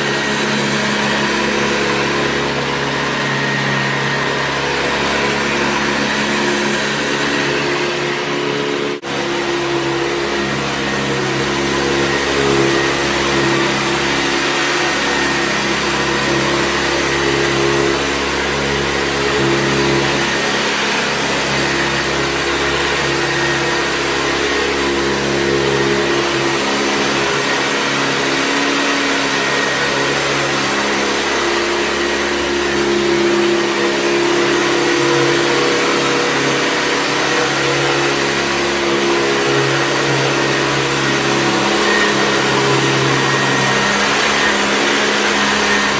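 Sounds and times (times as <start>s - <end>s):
vacuum cleaner running: 0.0s - 45.9s.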